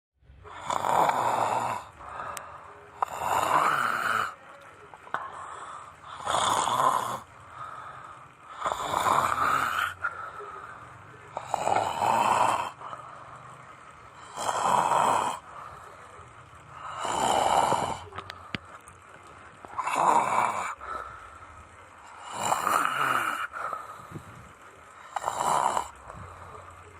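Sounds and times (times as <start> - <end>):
person snoring loudly: 0.5 - 4.4, 5.1 - 13.2, 14.1 - 15.9, 16.7 - 18.3, 19.7 - 21.1, 22.0 - 24.3, 25.0 - 26.7.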